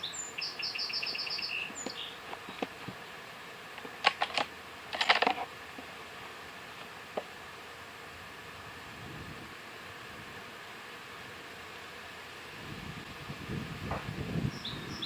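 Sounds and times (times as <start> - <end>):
songbird trilling: 0.0 - 2.6, 14.4 - 15.0
rifle bolt clicking and rattling: 4.0 - 5.5.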